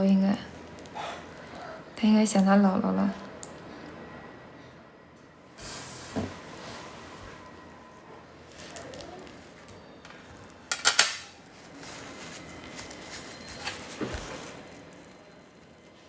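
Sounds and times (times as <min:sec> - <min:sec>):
utensils clinking together: 0:10.1 - 0:11.4.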